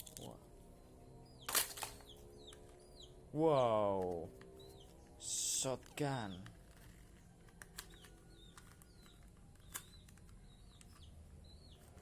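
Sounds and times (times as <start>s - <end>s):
faint bird chirps: 4.5s - 12.0s.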